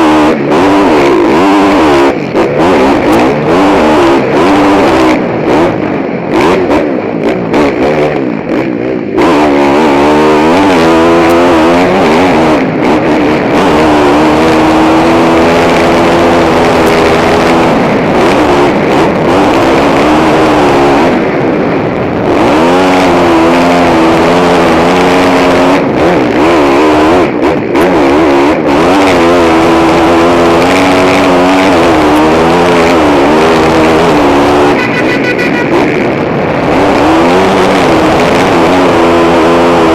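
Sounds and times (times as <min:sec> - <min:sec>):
motorcycle engine revving hard: 0:00.0 - 0:39.9.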